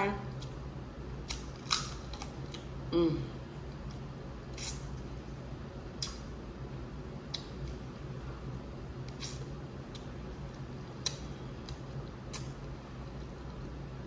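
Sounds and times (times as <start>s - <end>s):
person humming mm: 2.9s - 3.4s
sharp wet eating clicks: 6.0s - 6.3s, 11.0s - 12.6s.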